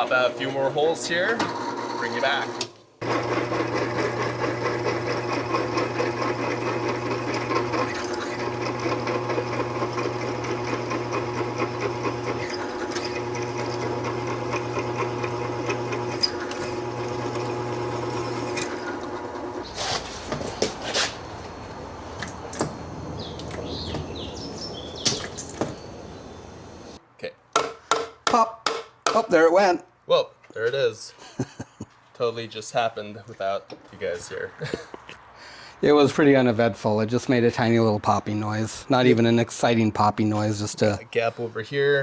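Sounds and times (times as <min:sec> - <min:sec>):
electric drill boring metal: 0:01.3 - 0:27.0.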